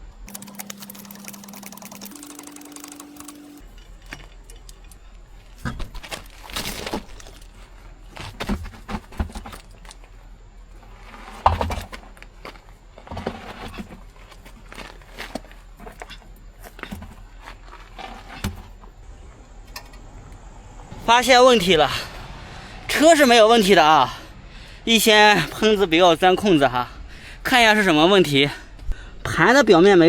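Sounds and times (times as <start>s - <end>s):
steady hum: 0.0s - 5.6s
tools and metal parts clinking: 0.3s - 7.8s, 19.7s - 20.1s.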